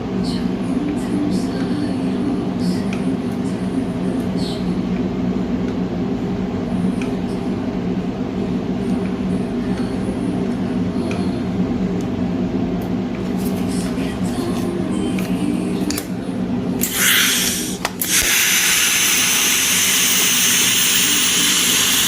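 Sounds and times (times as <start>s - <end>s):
welding arc buzzing and hissing: 16.8s - 22.0s.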